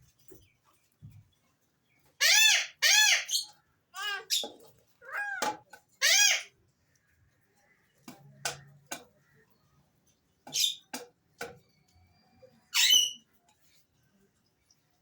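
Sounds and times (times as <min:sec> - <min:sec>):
parakeet harsh squawk: 0:02.2 - 0:04.5, 0:06.0 - 0:06.5.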